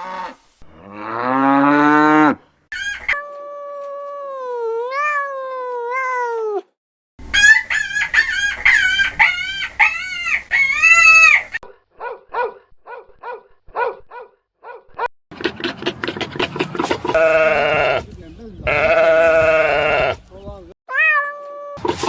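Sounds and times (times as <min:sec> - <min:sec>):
chickens calling: 0:07.3 - 0:11.6, 0:17.1 - 0:20.8
rooster crowing: 0:17.2 - 0:20.6.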